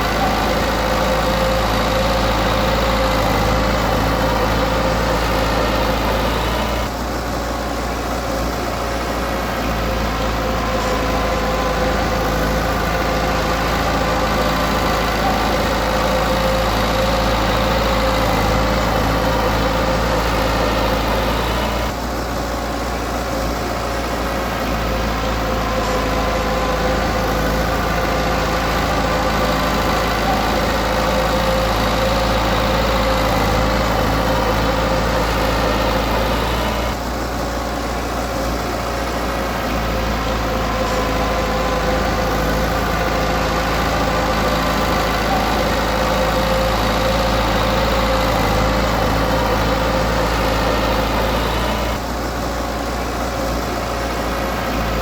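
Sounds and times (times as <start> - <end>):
heavy diesel engine running: 0.0 - 55.0.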